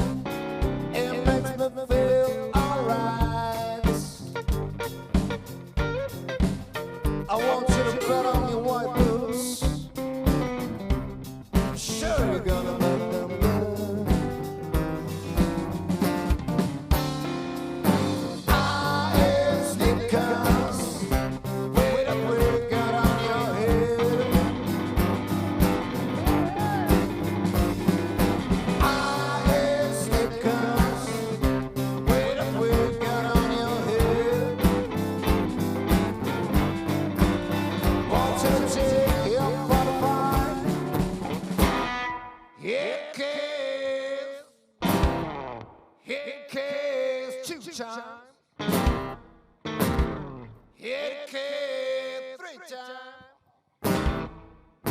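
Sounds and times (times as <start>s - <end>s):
bass: 0.0s - 41.9s, 44.8s - 45.4s
steady drum beat: 0.0s - 42.0s, 48.8s - 49.2s
lead guitar bent notes: 34.2s - 42.4s, 44.8s - 45.6s.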